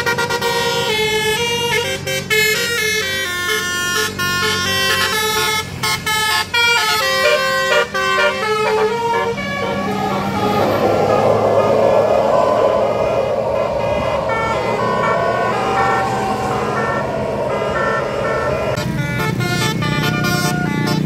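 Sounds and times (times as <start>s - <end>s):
multi-tone bus air horn tune: 0.0s - 11.8s, 16.3s - 21.0s
noisy rush: 8.7s - 20.2s.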